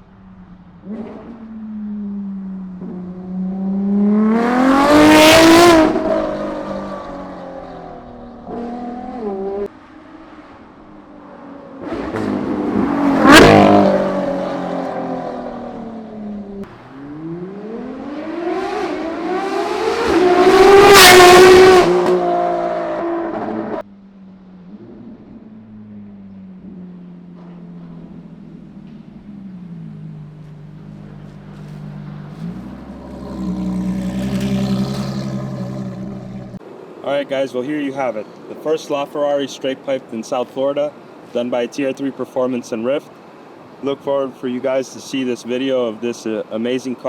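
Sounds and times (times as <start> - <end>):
sports car accelerating hard: 0.8 - 23.9, 24.5 - 36.6.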